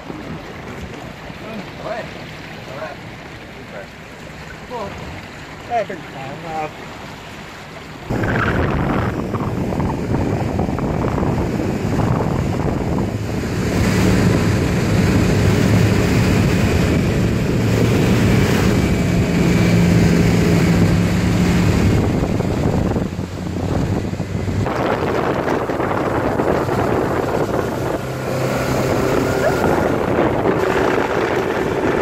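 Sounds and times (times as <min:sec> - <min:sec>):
rushing wind and water: 0:00.0 - 0:32.0
speedboat engine running: 0:00.0 - 0:32.0
wind buffeting microphone: 0:08.1 - 0:32.0.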